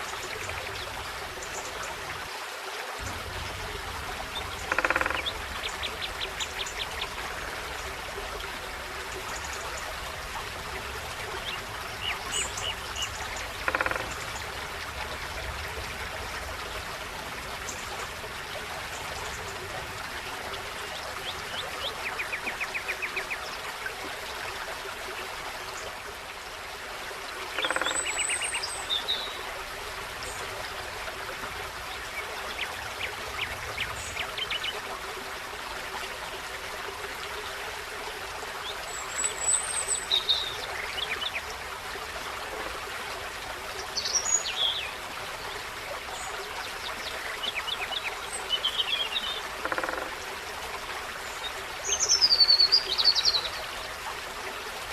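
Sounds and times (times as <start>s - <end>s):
forest stream rushing: 0.0s - 54.9s.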